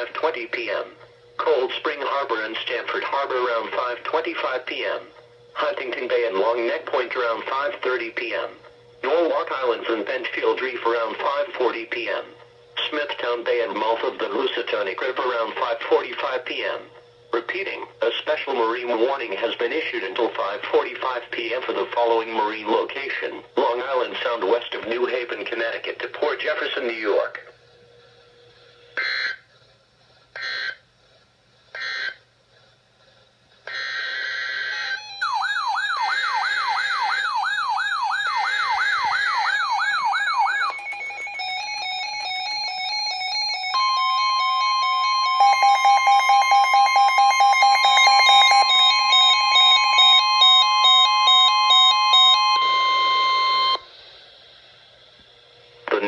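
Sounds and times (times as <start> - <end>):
steady alarm tone: 0.0 - 29.5, 30.3 - 30.9, 31.7 - 32.3, 33.6 - 54.2
screeching data bursts: 33.7 - 35.6
wailing electronic sweep: 33.7 - 53.9
stepped beeping patterns: 37.5 - 53.8.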